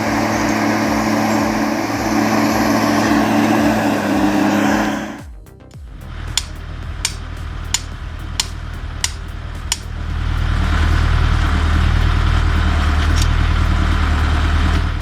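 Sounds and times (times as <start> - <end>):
truck diesel engine labouring: 0.0 - 5.2, 6.1 - 15.0
background music: 0.0 - 15.0
sharp click: 6.3 - 10.0.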